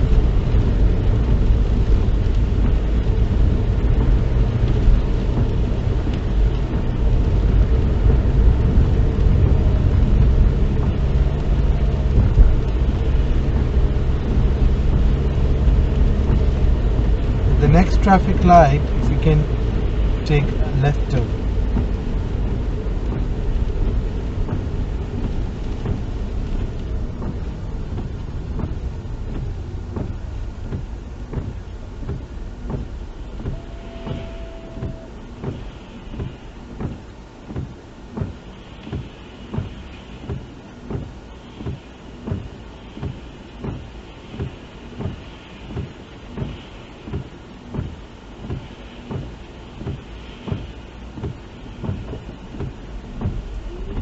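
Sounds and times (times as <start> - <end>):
car engine and road noise: 0.0 - 54.0
turn signal clicking: 0.0 - 54.0
windscreen wipers swishing: 0.0 - 54.0
short steady tone: 33.5 - 35.1.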